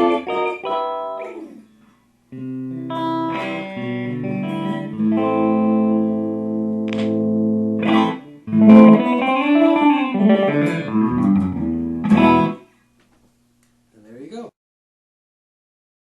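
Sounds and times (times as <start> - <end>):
electric guitar chords and notes: 0.0 - 12.7.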